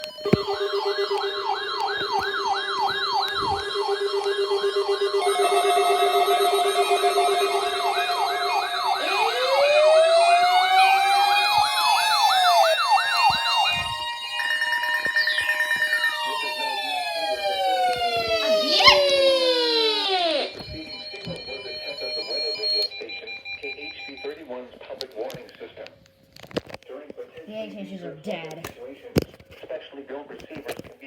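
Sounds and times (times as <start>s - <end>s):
rising siren wail: 0.0s - 22.9s
electronic siren sweeps: 0.0s - 23.9s
steady siren tones: 0.0s - 24.4s.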